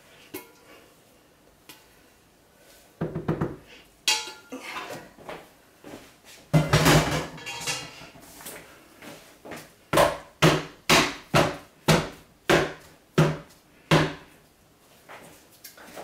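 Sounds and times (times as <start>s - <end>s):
pot and utensils clattering: 4.1s - 5.2s, 6.5s - 8.3s.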